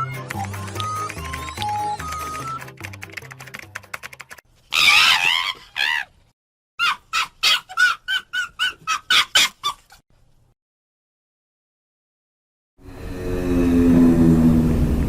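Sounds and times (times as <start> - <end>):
chicken squawking: 4.6 - 6.2, 6.8 - 10.0.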